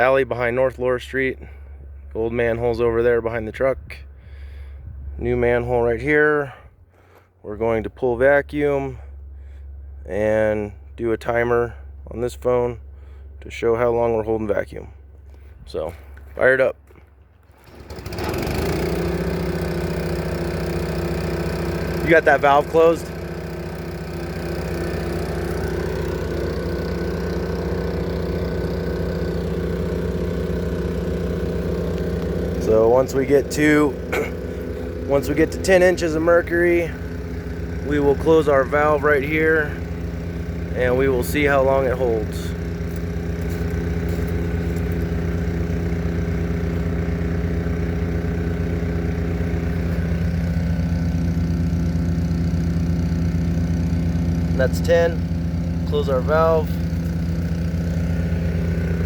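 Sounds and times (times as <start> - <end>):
vacuum tester engine running: 16.9 - 59.0.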